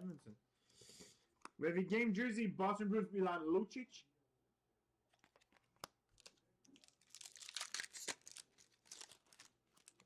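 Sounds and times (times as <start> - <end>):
foil wrapper crinkling: 5.2 - 10.0.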